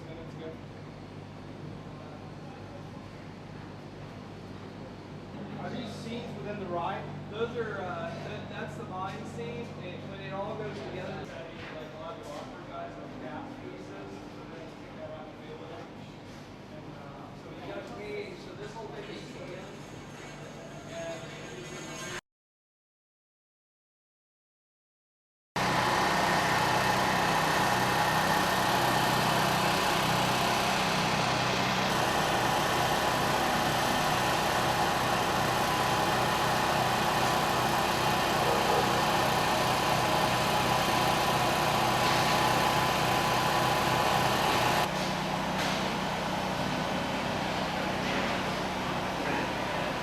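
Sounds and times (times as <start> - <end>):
heavy machinery engine running: 25.6 - 50.0.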